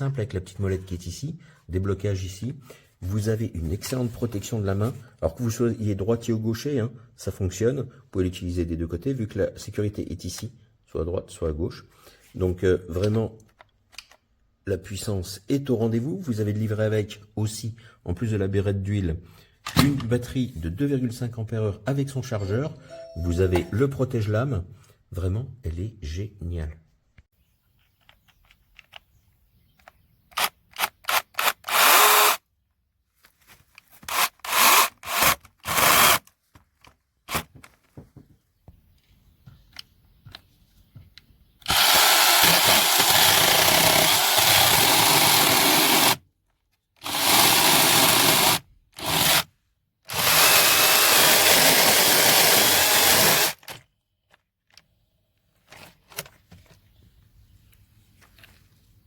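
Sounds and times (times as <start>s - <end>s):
cordless mini chainsaw running: 31.1s - 32.4s, 34.1s - 36.2s, 41.6s - 46.2s, 47.0s - 49.5s, 50.1s - 53.7s.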